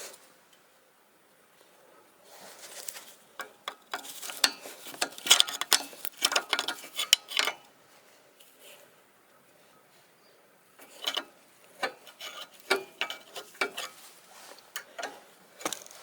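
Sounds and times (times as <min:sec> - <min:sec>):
metal tools clinking and clattering: 0:03.9 - 0:07.6, 0:10.8 - 0:14.1.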